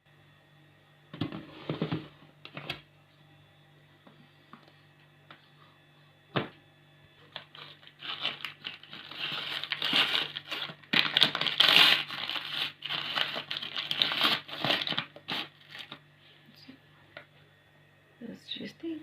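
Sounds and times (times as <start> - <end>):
plastic packaging crinkling: 7.2 - 16.0.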